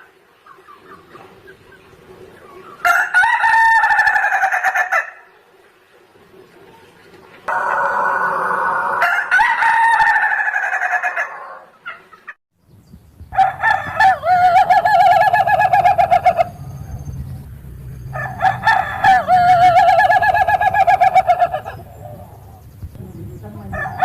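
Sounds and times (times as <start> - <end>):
rooster crowing in quavering calls: 2.7 - 5.3, 7.5 - 11.9, 13.3 - 17.0, 17.8 - 22.6, 23.6 - 24.0.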